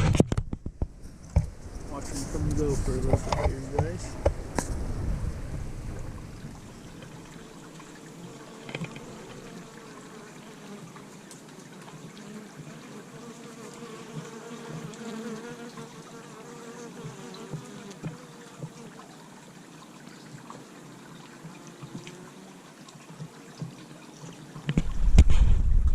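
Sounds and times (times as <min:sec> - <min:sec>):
sudden loud rumble: 0:00.8 - 0:07.3
bees buzzing: 0:01.5 - 0:18.8.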